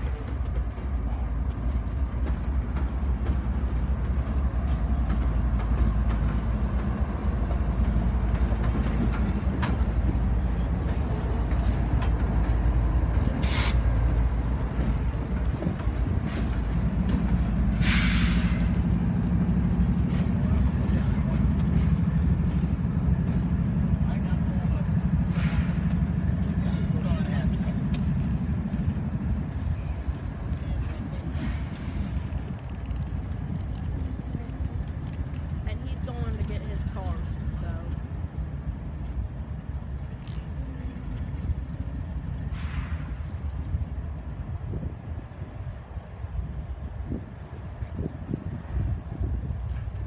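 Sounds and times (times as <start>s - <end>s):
locomotive engines rumbling: 0.0s - 50.0s
air brakes hissing: 13.4s - 13.9s, 17.7s - 18.8s, 25.3s - 25.9s, 42.4s - 43.3s.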